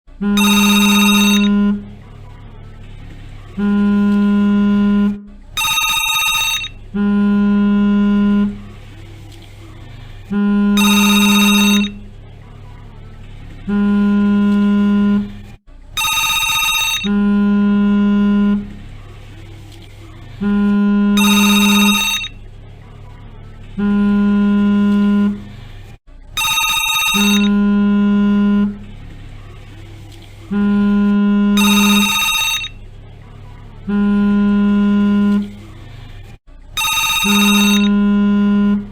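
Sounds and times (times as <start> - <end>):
phone vibration buzzing: 0.2 - 1.9, 3.6 - 8.6, 10.4 - 12.0, 13.7 - 15.4, 20.5 - 22.4, 23.8 - 25.4, 26.4 - 28.8, 30.6 - 32.8, 33.9 - 35.6, 36.8 - 38.9
telephone ringing: 0.4 - 1.8, 5.6 - 6.8, 10.8 - 12.0, 16.0 - 17.3, 21.2 - 22.4, 26.4 - 27.7, 31.6 - 32.8, 36.8 - 38.4.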